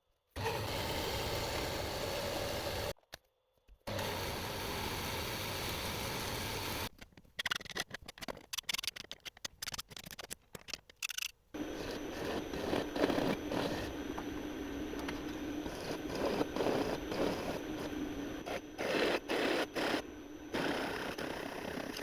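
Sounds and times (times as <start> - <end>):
machine tool humming: 11.6 - 22.0.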